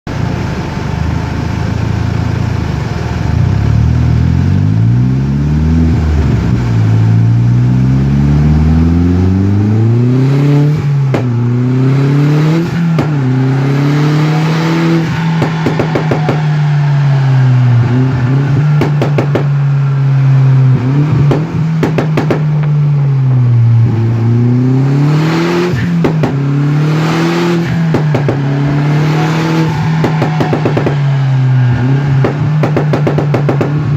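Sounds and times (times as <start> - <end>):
car engine revving: 0.1 - 33.9
exhaust crackles and pops: 10.8 - 11.6, 12.6 - 13.4, 15.0 - 16.9, 17.7 - 20.0, 20.6 - 24.3, 25.7 - 26.6, 27.6 - 28.8, 29.7 - 33.9.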